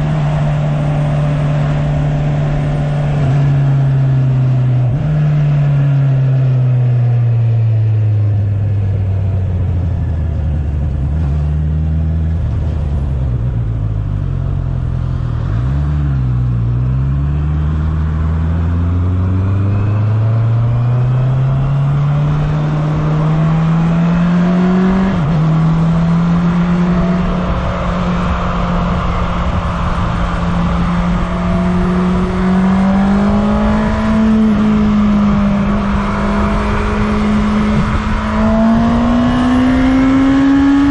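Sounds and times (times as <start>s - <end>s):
motorcycle engine revving: 0.0s - 40.9s
wind rush: 19.2s - 40.9s.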